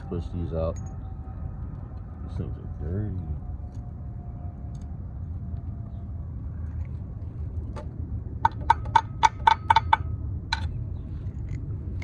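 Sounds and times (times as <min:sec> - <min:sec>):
steady low rumble: 0:00.0 - 0:12.0
sharp ringing metal taps: 0:08.4 - 0:10.8.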